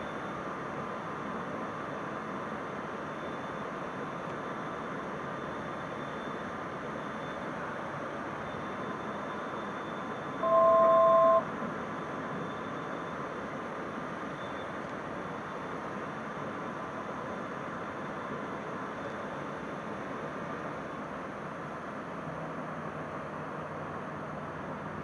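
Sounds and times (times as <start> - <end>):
two-tone electronic beep: 10.4 - 11.5.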